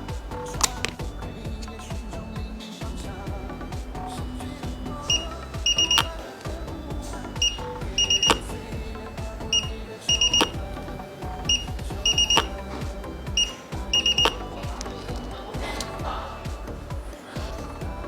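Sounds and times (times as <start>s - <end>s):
background music with low beat: 0.0s - 18.0s
short high electronic beeps: 5.1s - 6.2s, 7.4s - 8.6s, 9.5s - 10.6s, 11.4s - 12.6s, 13.4s - 14.4s
click: 9.6s - 10.6s, 13.4s - 16.0s.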